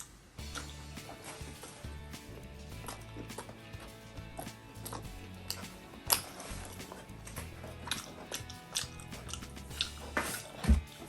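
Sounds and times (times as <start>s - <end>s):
background music: 0.3s - 11.0s
crisp chewing clicks: 7.3s - 10.0s.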